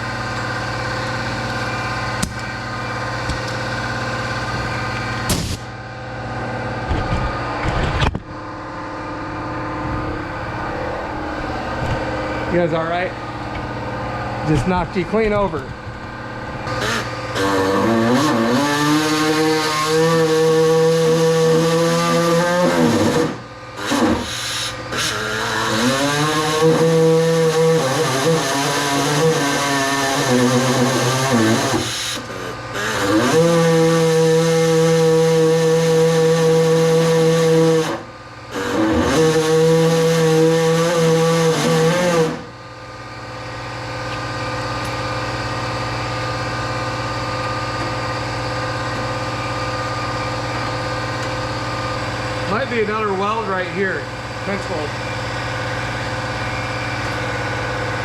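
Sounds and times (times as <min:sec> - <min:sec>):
air compressor hum: 0:00.0 - 0:58.0
power tool cutting sheet metal: 0:16.6 - 0:42.6.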